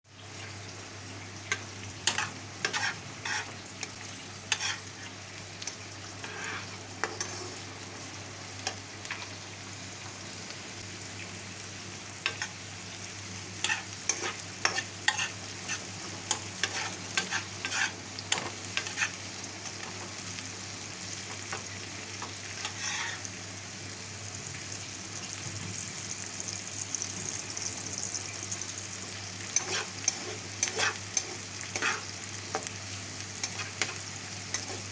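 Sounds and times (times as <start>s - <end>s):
onions sizzling in a pan: 0.1s - 34.9s
spatula scraping a pan: 2.0s - 3.6s, 4.5s - 4.9s, 6.2s - 7.6s, 13.6s - 19.2s, 22.2s - 23.3s, 29.5s - 32.7s, 33.4s - 34.9s.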